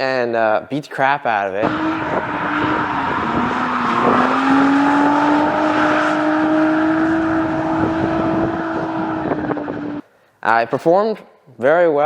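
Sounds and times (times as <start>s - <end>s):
car engine at high revs: 1.6s - 10.0s.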